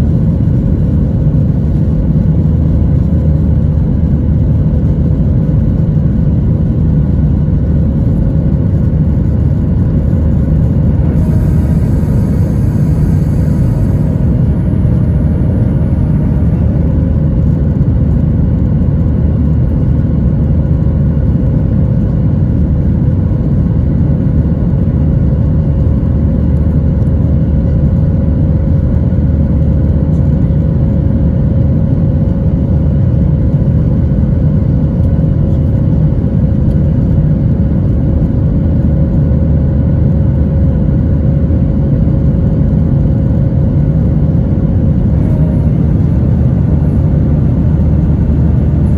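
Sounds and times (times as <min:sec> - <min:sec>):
jet engines rumbling in cabin: 0:00.0 - 0:48.9.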